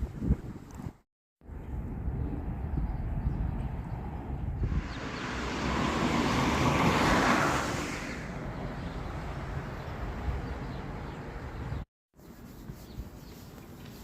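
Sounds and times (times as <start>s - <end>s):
vehicle passing by: 4.0s - 11.7s.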